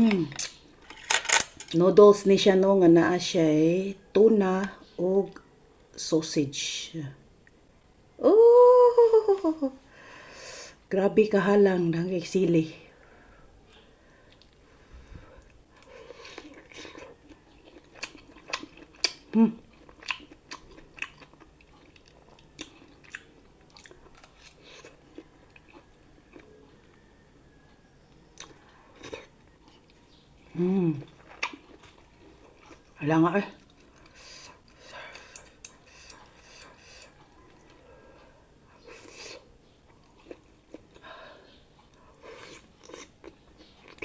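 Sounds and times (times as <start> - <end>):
person chewing noodles: 13.7 - 44.0.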